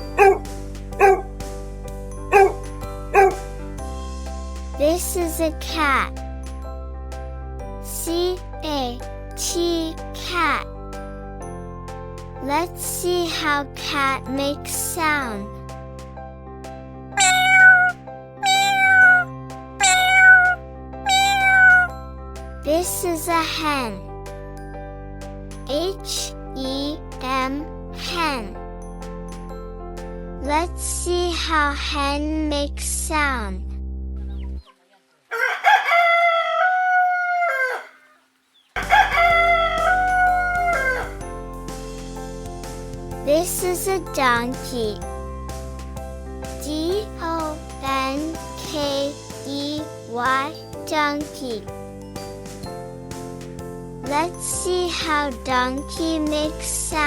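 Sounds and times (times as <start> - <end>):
light background music: 0.0 - 34.7, 38.8 - 57.0
rooster crowing: 2.4 - 2.6, 21.1 - 21.9, 35.3 - 38.2, 38.8 - 41.2
cat meowing: 17.2 - 20.5, 21.1 - 21.9.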